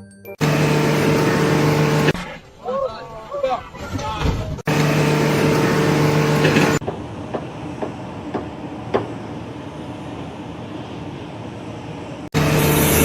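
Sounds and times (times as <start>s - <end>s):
loud machine hum: 0.4s - 2.2s, 4.7s - 7.3s, 12.0s - 13.0s.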